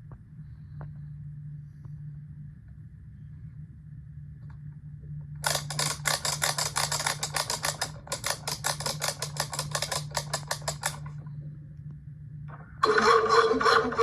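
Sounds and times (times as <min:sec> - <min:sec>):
steady low hum: 0:00.0 - 0:14.0
toy rapid clicking: 0:05.4 - 0:11.1, 0:12.8 - 0:14.0.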